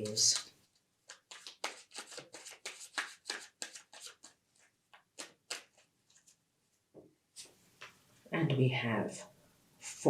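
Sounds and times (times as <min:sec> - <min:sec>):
cards being shuffled: 0:00.0 - 0:06.4.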